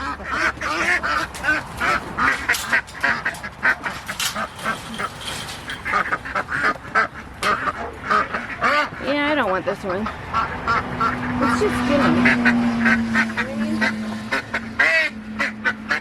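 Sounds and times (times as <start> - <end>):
ducks quacking: 0.0 - 16.0.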